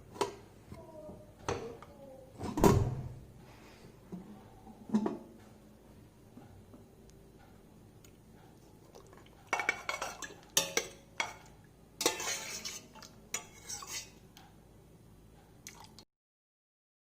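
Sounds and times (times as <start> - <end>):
metal utensil scraping a pot: 9.5 - 14.2.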